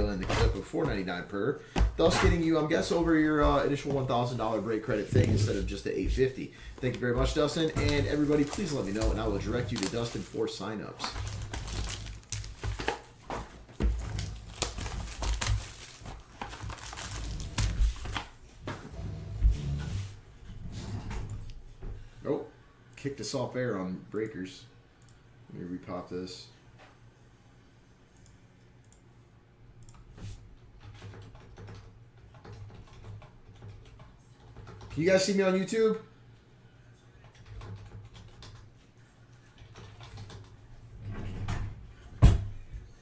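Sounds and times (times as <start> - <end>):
low steady hum: 0.0 - 30.6
shrink wrap crinkling and tearing: 6.9 - 13.1, 14.0 - 18.2
keyboard typing and clicking: 30.8 - 34.9, 37.2 - 38.7.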